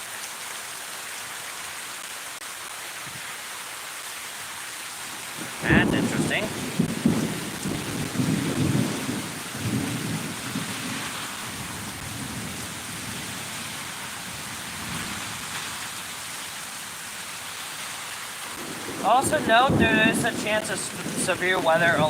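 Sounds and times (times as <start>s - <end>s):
steady rain: 0.0s - 22.0s
thunder rumbling: 5.2s - 16.1s, 18.5s - 22.0s.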